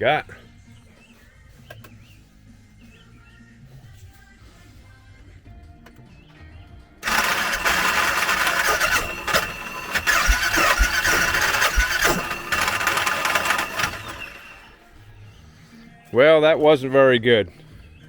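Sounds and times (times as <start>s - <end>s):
engine cranking by starter: 7.0s - 14.8s.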